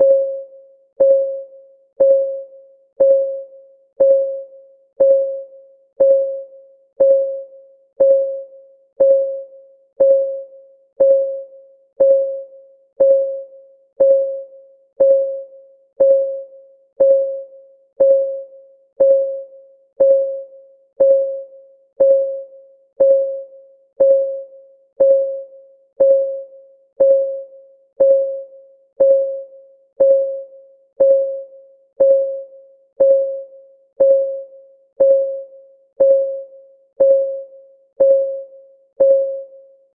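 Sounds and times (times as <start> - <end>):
countdown timer ticking: 18.0 - 18.4, 19.0 - 19.4, 20.0 - 20.4, 21.0 - 21.4, 22.0 - 22.4, 23.0 - 23.4, 24.0 - 24.4, 25.0 - 25.4, 26.0 - 26.4, 27.0 - 27.4, 28.0 - 28.4, 29.0 - 29.4, 30.0 - 30.4, 31.0 - 31.4, 32.0 - 32.4, 33.0 - 33.4, 34.0 - 34.4, 35.0 - 35.4, 36.0 - 36.4, 37.0 - 37.4, 38.0 - 38.4.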